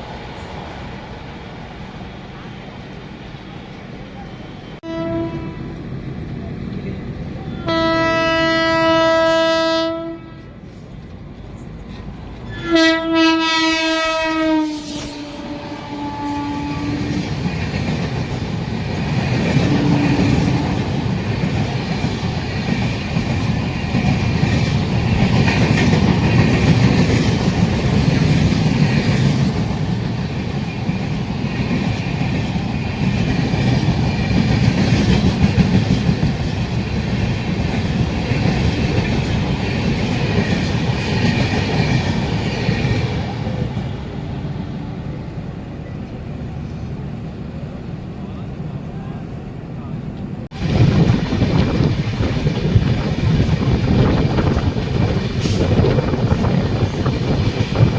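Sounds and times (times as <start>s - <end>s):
train wheels on track: 0.0s - 57.9s
train horn blasts: 4.8s - 5.8s, 7.6s - 10.6s, 12.5s - 17.2s.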